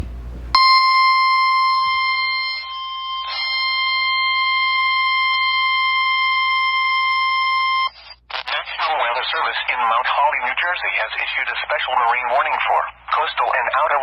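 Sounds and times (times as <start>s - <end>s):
steady high warning tone: 0.6s - 8.2s.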